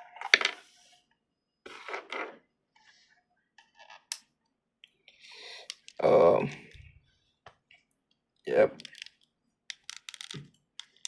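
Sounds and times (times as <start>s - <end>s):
small plastic clicks: 8.1s - 11.0s.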